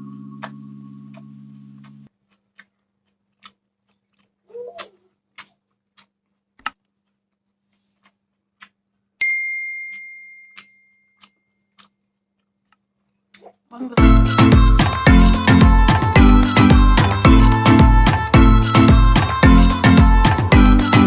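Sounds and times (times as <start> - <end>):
bright ding: 9.2 - 11.2
clock ticking: 14.0 - 21.0.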